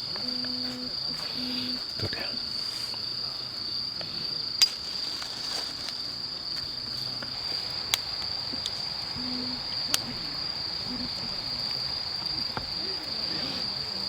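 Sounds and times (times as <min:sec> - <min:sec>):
crickets trilling: 0:00.0 - 0:14.0.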